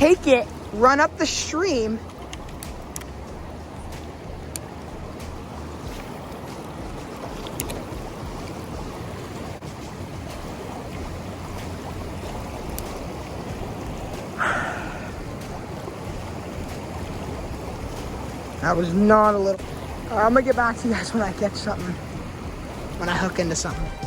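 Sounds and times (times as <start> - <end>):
mountain stream flowing over rocks: 0.0 - 24.0
water splash: 0.0 - 24.0.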